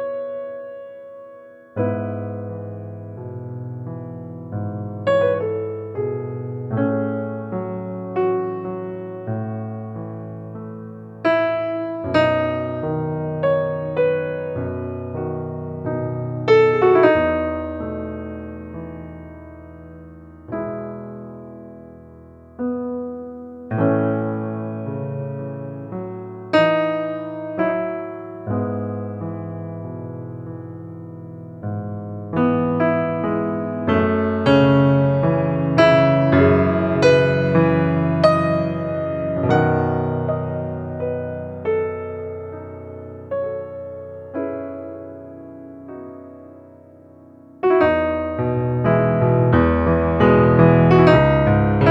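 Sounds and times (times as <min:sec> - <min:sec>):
slow piano-like keyboard notes: 0:00.0 - 0:51.9.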